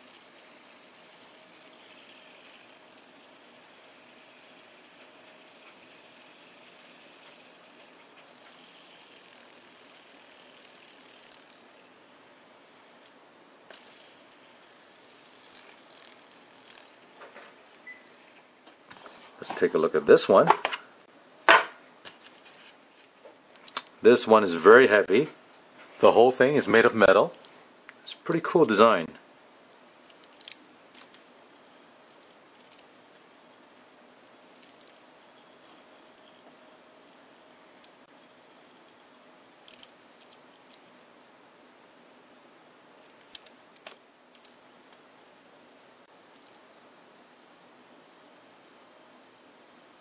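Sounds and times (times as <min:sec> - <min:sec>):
fidget spinner whirring: 0:00.0 - 0:19.7, 0:30.0 - 0:41.0.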